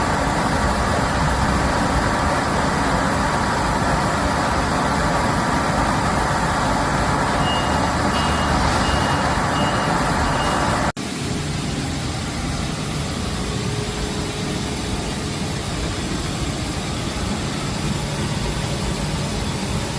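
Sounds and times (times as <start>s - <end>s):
woodworking machinery running: 0.0s - 19.9s
short high beeps: 7.4s - 10.9s.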